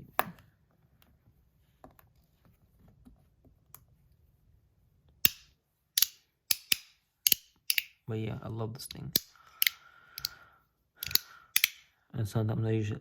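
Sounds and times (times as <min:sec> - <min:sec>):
loud sharp plastic clicks: 0:05.2 - 0:08.0.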